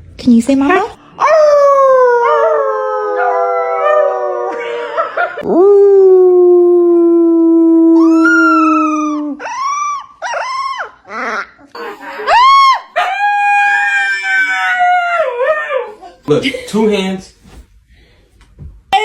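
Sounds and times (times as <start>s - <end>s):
dog howling: 1.0s - 16.2s
dog yowling: 7.9s - 16.2s.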